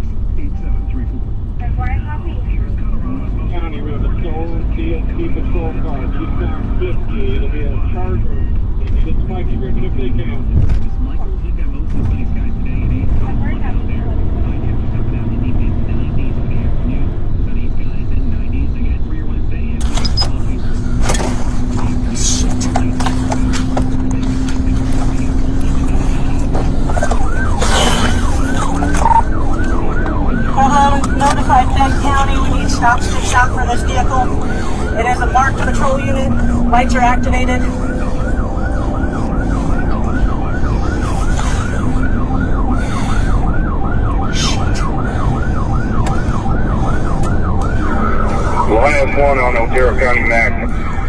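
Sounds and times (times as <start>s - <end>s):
engine and road drone: 0.0s - 51.0s
speeding vehicle rumble: 0.0s - 51.0s
police siren yelping: 19.8s - 51.0s.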